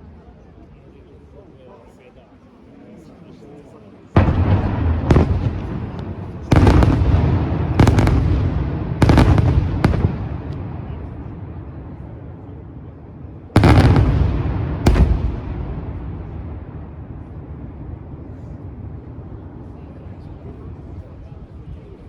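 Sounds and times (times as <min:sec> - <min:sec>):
fireworks booming with echo: 0:04.2 - 0:21.0.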